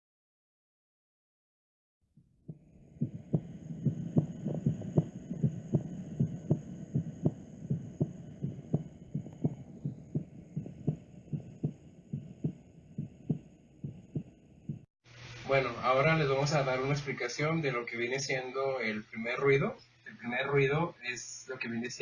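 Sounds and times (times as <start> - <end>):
low steady hum: 2.4 - 19.0
heartbeat lub-dub: 2.5 - 14.9.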